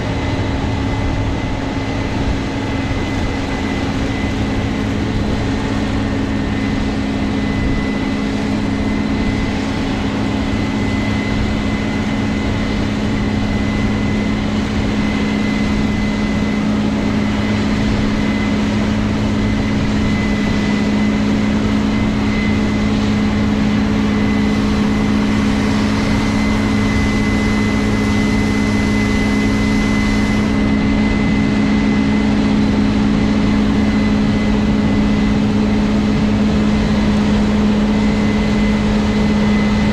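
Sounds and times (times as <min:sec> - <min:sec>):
combine harvester engine drone: 0:00.0 - 0:39.9
thin high whine: 0:00.0 - 0:39.9.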